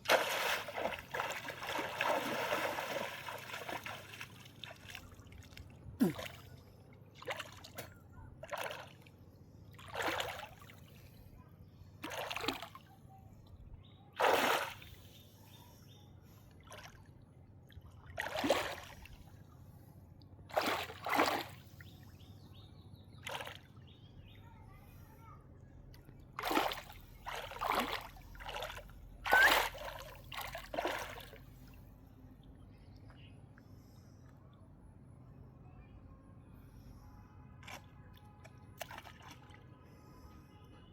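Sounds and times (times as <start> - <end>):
water splashing and sloshing: 0.0 - 11.3, 12.0 - 13.6, 14.2 - 15.4, 16.3 - 22.1, 23.2 - 23.8, 26.0 - 34.2, 37.6 - 40.2
faint low hum: 0.0 - 40.9.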